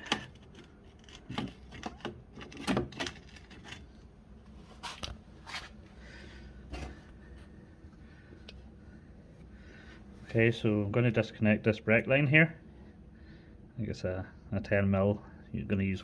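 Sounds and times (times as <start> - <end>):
objects clicking and knocking: 0.0 - 3.9.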